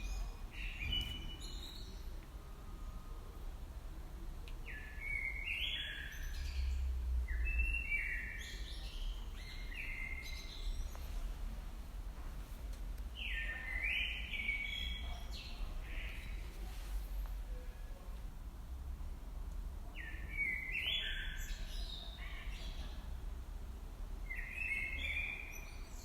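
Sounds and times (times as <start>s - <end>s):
songbird singing: 0.0s - 3.6s, 4.4s - 11.6s, 13.0s - 16.7s, 19.9s - 23.2s, 24.2s - 26.0s.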